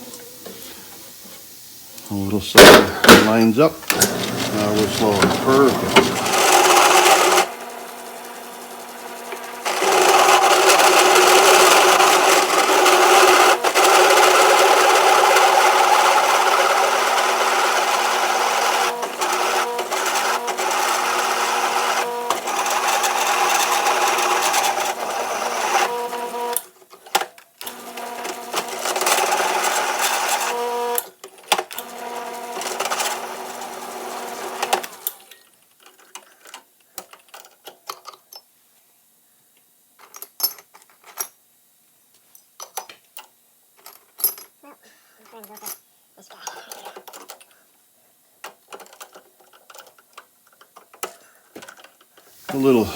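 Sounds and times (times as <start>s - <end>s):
drill bit grinding through steel: 3.9s - 26.6s
drill press motor hum: 3.9s - 26.6s, 27.6s - 31.1s, 31.8s - 35.3s.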